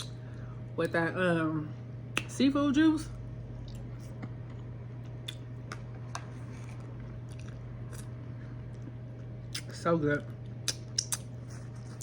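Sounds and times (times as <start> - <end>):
steady low hum: 0.0 - 12.0
person chewing: 3.6 - 12.0
wet mouth smacks and clicks: 10.6 - 11.3.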